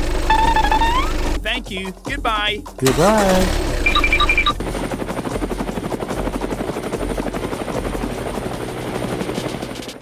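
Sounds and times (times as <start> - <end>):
short high beeps: 3.8 - 4.6.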